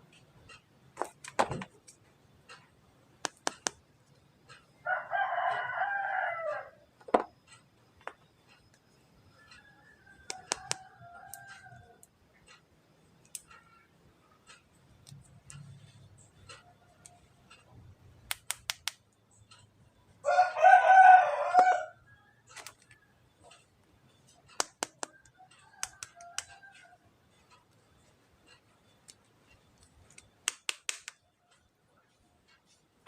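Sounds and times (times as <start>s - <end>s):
sharp clicks: 0.1s - 4.6s, 10.2s - 13.8s, 14.5s - 19.6s, 22.5s - 26.9s, 28.5s - 31.7s
rooster crowing: 4.8s - 6.8s, 9.6s - 12.0s, 20.2s - 22.5s, 25.3s - 27.0s.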